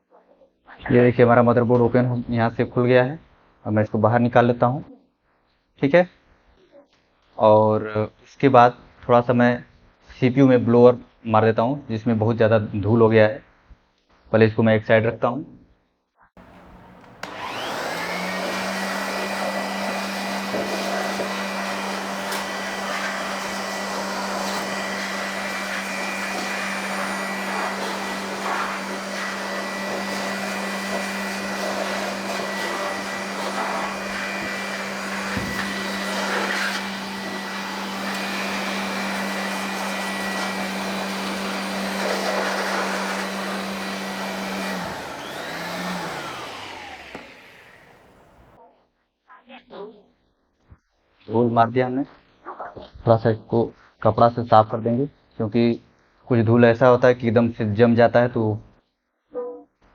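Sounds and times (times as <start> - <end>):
electric air blower whining: 16.4 - 48.6.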